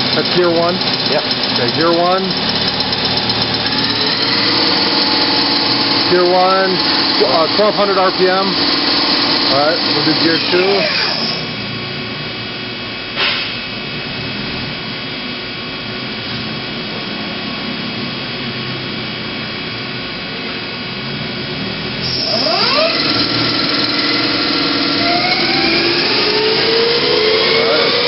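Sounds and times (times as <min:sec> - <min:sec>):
spindle spinning up with whine: 0:00.0 - 0:11.7, 0:21.8 - 0:28.0
lathe machine hum and whine: 0:00.0 - 0:28.0.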